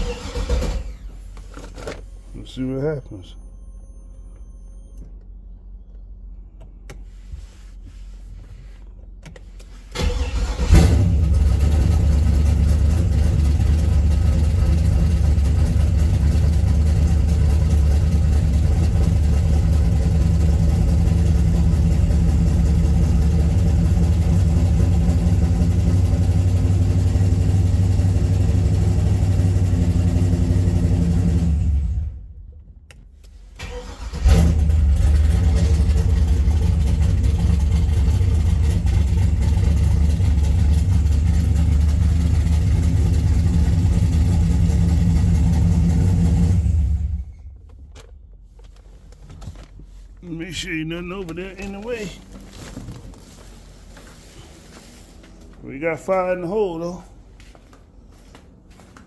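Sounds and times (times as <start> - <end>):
car engine cranking and starting: 0.0 - 7.1, 9.0 - 55.6
car engine running steadily: 0.0 - 33.5, 34.1 - 55.5.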